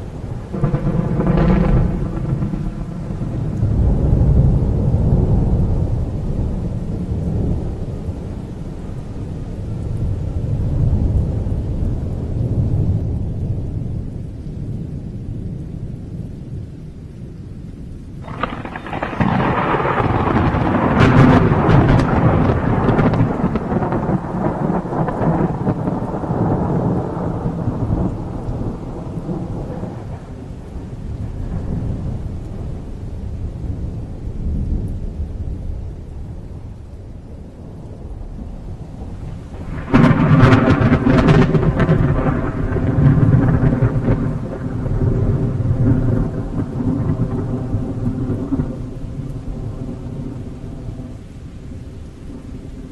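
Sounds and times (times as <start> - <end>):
low thunder rumble: 0.0 - 52.9
rain: 0.0 - 52.9
loud crack of thunder: 0.4 - 6.0, 18.2 - 30.5, 39.0 - 50.4
thunder clap: 0.4 - 6.1, 18.2 - 32.9, 37.6 - 50.4.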